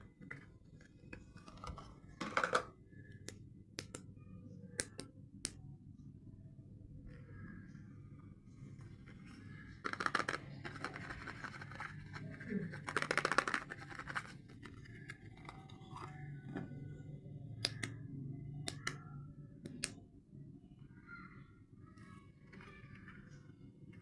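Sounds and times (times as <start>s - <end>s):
packaging crackling: 9.5s - 16.3s.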